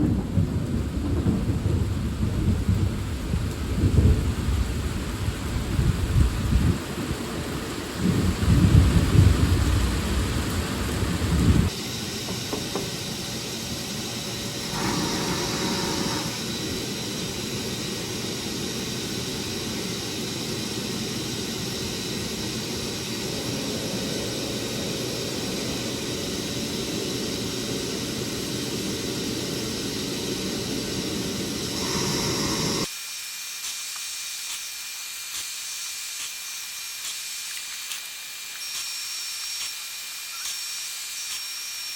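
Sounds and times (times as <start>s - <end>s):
thunder rumbling: 0.0s - 32.9s
rain: 0.0s - 41.8s
steady hiss: 0.3s - 41.9s
faint hum: 8.7s - 32.9s.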